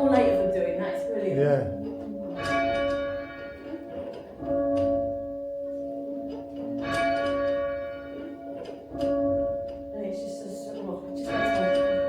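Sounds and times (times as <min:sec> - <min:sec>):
muffled church bell strokes: 0:00.0 - 0:12.0.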